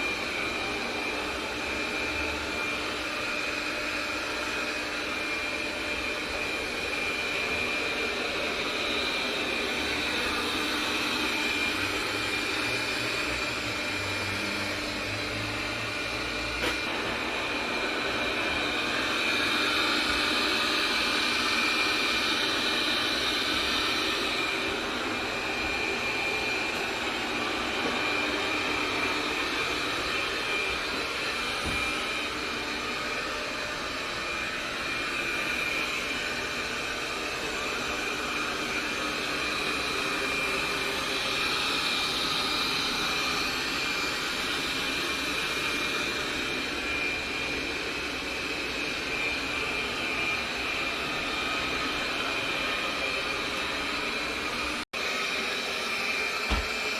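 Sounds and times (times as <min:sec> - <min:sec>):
robot vacuum cleaner whirring: 0:00.0 - 0:56.9.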